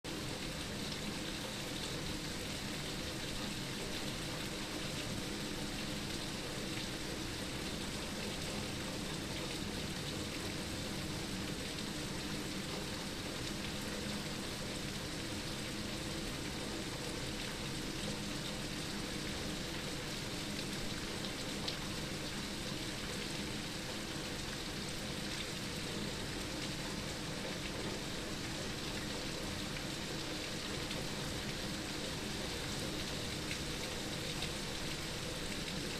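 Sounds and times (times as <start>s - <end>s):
steady rain: 0.0s - 35.9s.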